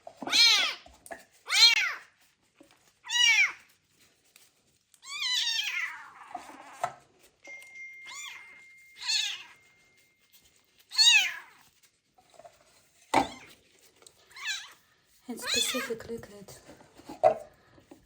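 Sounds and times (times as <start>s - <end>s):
kitten meowing: 5.0s - 6.8s.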